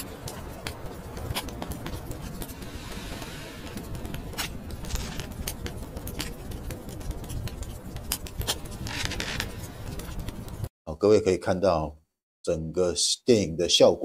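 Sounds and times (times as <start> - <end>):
sharp clicks and scraping: 0.0 - 10.7
steady low rumble: 0.0 - 10.7.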